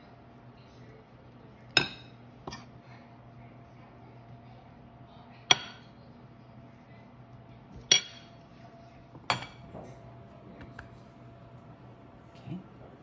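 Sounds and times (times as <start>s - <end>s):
kitchenware clinking: 1.7s - 2.7s, 5.5s - 6.0s, 7.8s - 8.4s, 9.2s - 10.0s.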